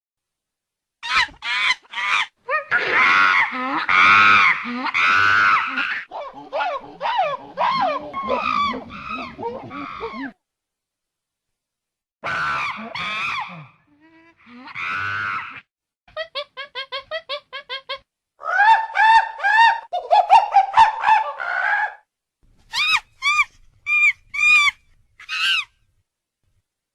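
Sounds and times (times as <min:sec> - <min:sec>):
monkey screeching and chattering: 0:04.1 - 0:10.4, 0:22.7 - 0:25.7.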